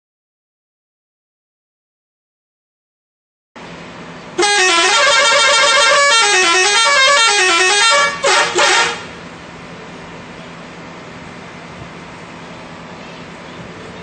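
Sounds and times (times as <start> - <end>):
multi-tone horn melody: 4.4 - 9.2
short horn blasts: 4.4 - 9.2.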